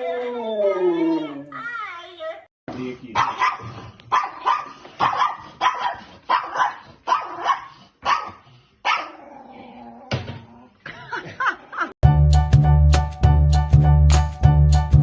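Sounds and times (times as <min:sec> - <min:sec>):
dog barking: 0:03.2 - 0:09.2.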